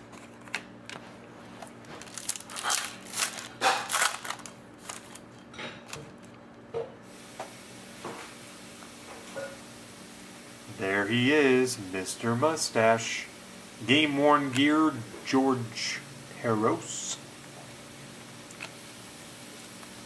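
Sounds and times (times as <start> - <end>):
plastic wrappers crinkling: 0.0 - 6.4.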